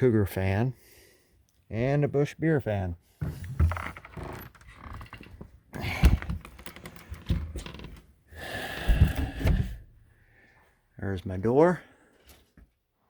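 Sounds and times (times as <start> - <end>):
heavy thumps: 5.8 - 10.0.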